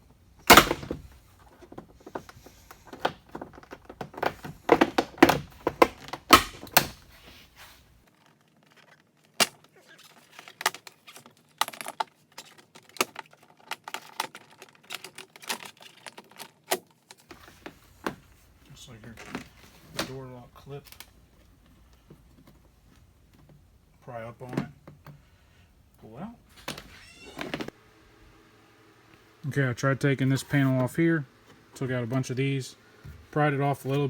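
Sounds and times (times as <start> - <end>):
plastic trim clicking and knocking: 0.4 - 7.1.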